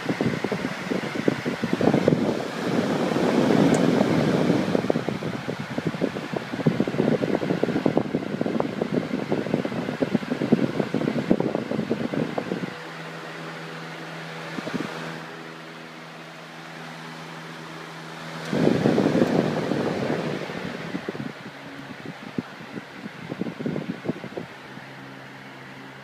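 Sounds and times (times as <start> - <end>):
wind buffeting microphone: 0.0 - 12.8, 18.3 - 24.8
fan humming: 0.0 - 26.0.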